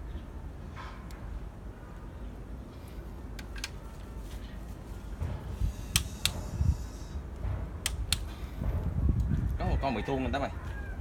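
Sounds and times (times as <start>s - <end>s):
low steady rumble: 3.8s - 11.0s.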